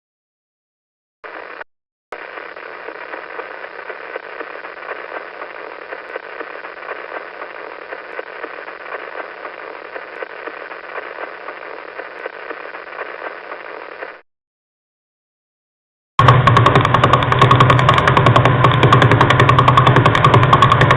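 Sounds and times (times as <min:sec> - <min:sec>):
radio static hiss: 0:01.2 - 0:01.6, 0:02.2 - 0:14.2
faint rapid ticks: 0:02.2 - 0:14.2, 0:16.2 - 0:20.9.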